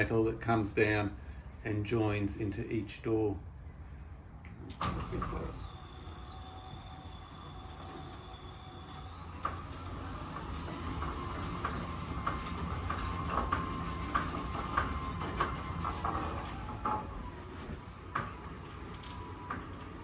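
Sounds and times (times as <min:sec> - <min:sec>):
garage door opener motor whine: 0:04.5 - 0:20.0.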